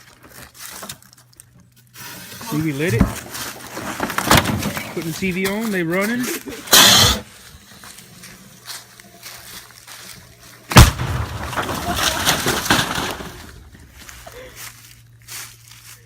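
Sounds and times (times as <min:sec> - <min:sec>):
noisy aftermath of explosion: 0:10.7 - 0:13.8
loud explosion blast: 0:10.8 - 0:12.0.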